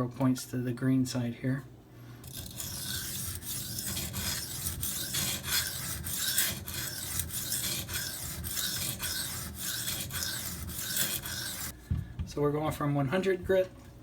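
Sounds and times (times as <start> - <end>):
knife rasping on sharpening stone: 2.2 - 11.7.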